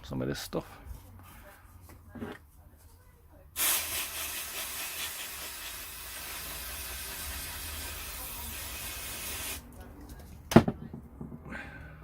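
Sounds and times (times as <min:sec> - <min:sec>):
aerosol spray hissing: 0:03.6 - 0:09.6.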